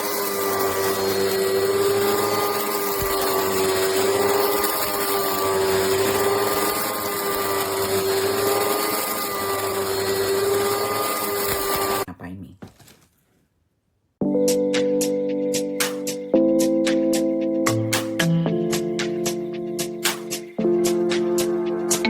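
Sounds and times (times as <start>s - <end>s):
vacuum cleaner running: 0.0s - 12.1s.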